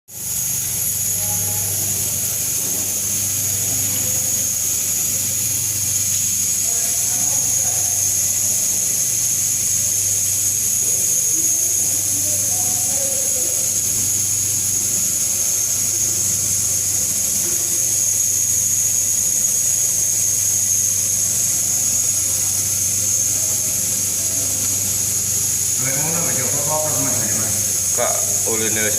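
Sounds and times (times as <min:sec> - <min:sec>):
refrigerator compressor hum: 0:00.1 - 0:28.9.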